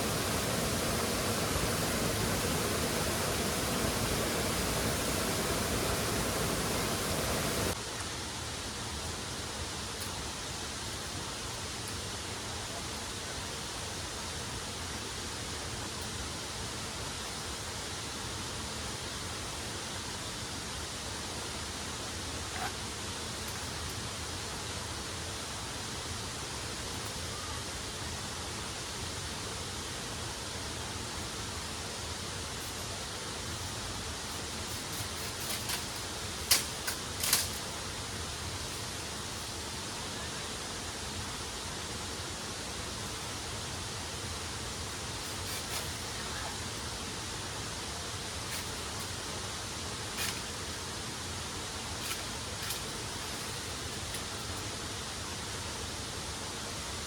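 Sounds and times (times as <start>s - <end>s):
waterfall rushing: 0.0s - 7.8s.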